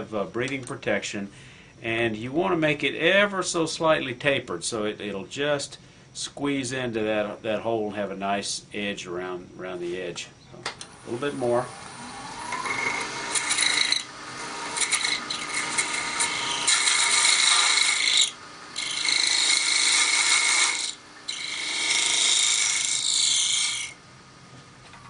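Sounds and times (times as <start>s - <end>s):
lathe scraper scraping with whine: 10.9s - 24.0s.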